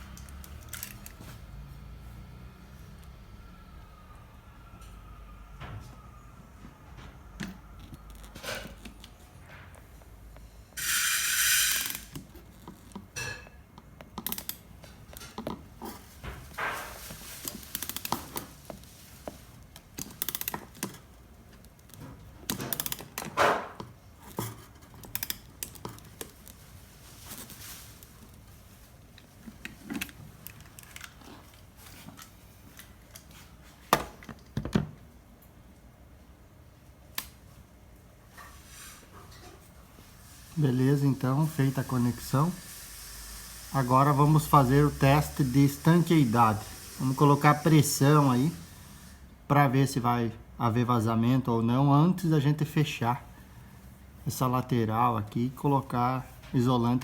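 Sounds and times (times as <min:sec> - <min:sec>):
short loud hissing rasp: 0:10.8 - 0:12.1, 0:41.6 - 0:49.3
hand tools clicking on metal tubing: 0:13.8 - 0:15.6, 0:20.0 - 0:21.0, 0:21.7 - 0:24.4.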